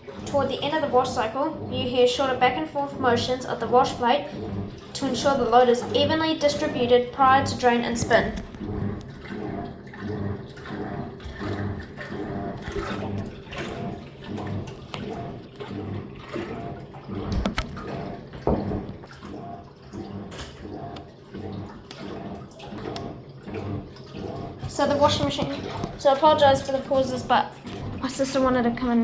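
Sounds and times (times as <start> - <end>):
washing machine agitating: 0.0 - 29.0
water sloshing: 0.0 - 29.0.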